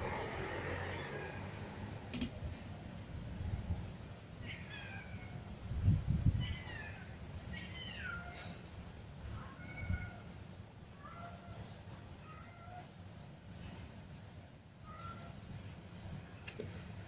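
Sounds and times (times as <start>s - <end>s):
sharp click: 2.1s - 2.4s
cat meowing: 4.4s - 5.4s, 6.3s - 8.6s, 9.4s - 10.3s.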